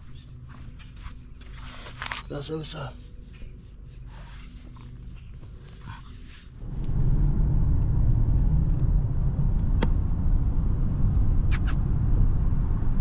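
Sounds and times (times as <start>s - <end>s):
steady low rumble: 0.0s - 13.0s
quick high ticks: 11.5s - 11.8s
sharp click: 11.5s - 11.8s.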